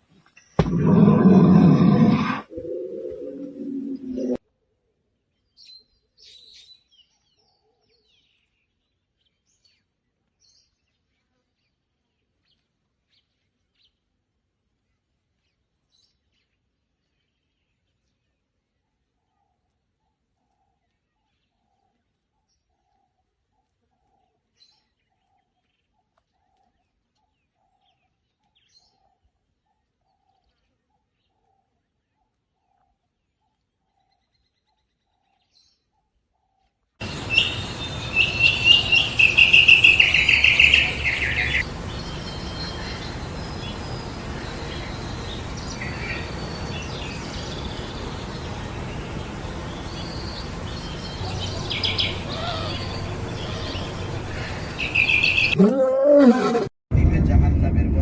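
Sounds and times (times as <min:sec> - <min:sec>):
outdoor background noise: 0:00.0 - 0:13.3, 0:35.5 - 0:58.0
faint bird calls: 0:00.6 - 0:04.4, 0:37.0 - 0:56.7
songbird chirping rapidly: 0:00.6 - 0:04.4, 0:37.0 - 0:55.6.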